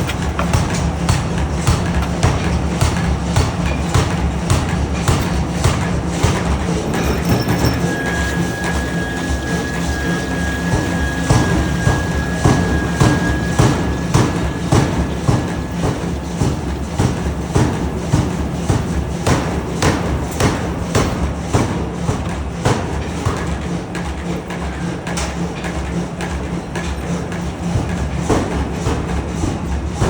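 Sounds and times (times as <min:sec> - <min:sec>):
forging hammer striking: 0:00.0 - 0:21.6
low machine hum: 0:00.0 - 0:22.1.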